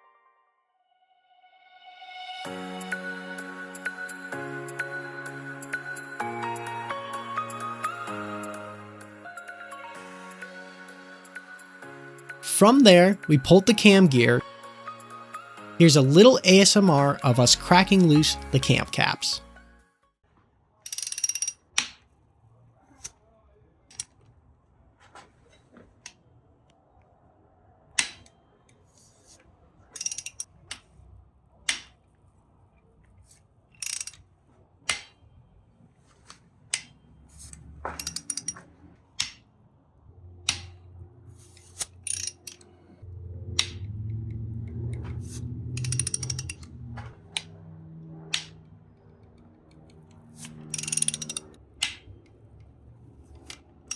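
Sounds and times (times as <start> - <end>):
ratchet clicking: 20.9 - 22.2, 28.0 - 32.2, 33.0 - 35.3, 36.7 - 39.5, 40.4 - 42.8, 43.5 - 47.5, 48.3 - 53.9
bolts cracking loose: 20.9 - 23.2, 23.9 - 24.4, 28.0 - 53.9
low drone: 42.1 - 52.9.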